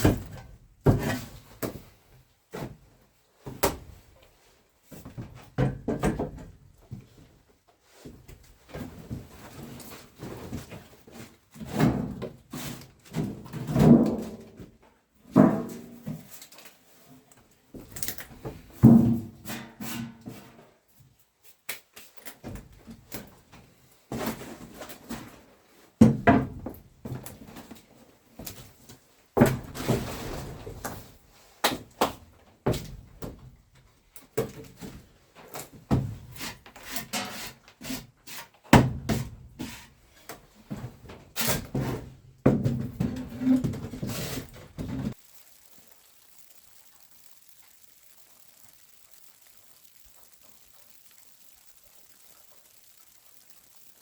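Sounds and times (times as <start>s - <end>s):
knocks and thuds on wood: 18.5s - 19.4s, 41.7s - 45.1s.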